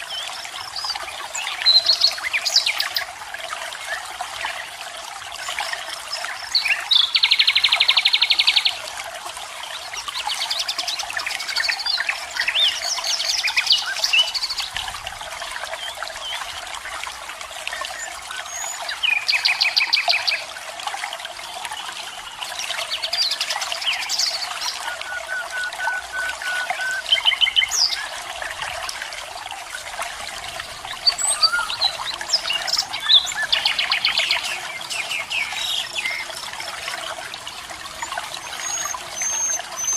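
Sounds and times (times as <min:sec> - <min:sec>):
bird chirps and whistles: 0:38.6 - 0:39.9.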